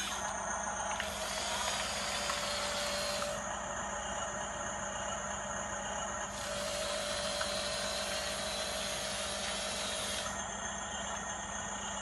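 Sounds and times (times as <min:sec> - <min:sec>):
toy vehicle motor whirring: 0:00.0 - 0:00.3, 0:00.9 - 0:03.4, 0:06.3 - 0:10.4
high-pitched whine: 0:00.0 - 0:12.0.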